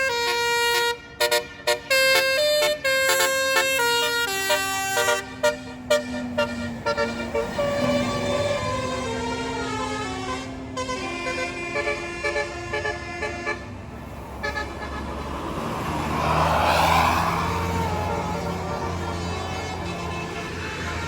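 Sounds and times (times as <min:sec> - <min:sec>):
bus engine passing by: 0:01.8 - 0:21.0.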